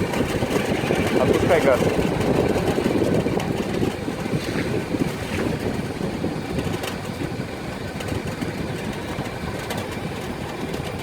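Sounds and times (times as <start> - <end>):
car rumble while driving: 0.0 - 11.0
faint clicks from wheel: 6.6 - 11.0.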